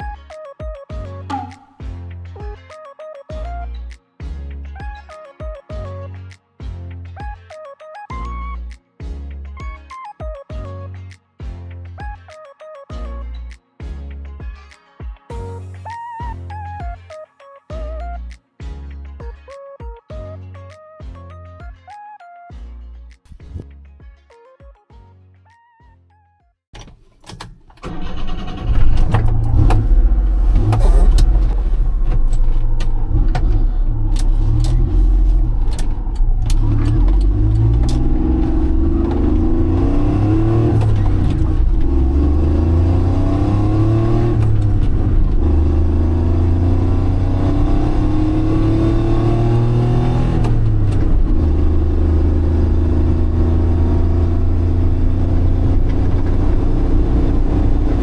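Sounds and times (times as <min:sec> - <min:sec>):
gear changes: 0:26.8 - 0:58.0
truck engine revving: 0:27.9 - 0:58.0.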